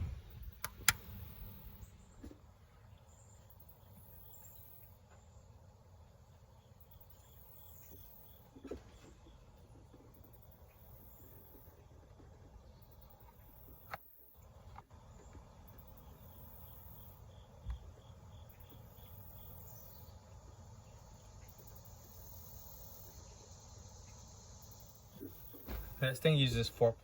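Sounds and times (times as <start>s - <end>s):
insects chirping: 0.0s - 27.0s
soft clicks: 0.5s - 1.5s.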